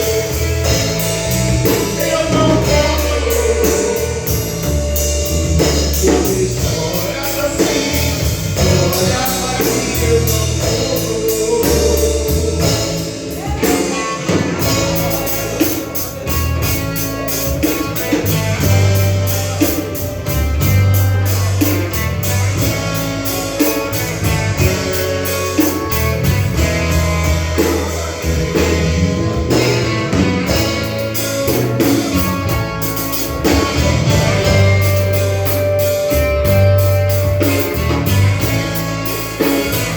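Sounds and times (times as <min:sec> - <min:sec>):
person singing: 0:00.0 - 0:16.4
bass: 0:00.0 - 0:39.9
drum kit: 0:00.0 - 0:39.9
guitar: 0:00.0 - 0:39.9.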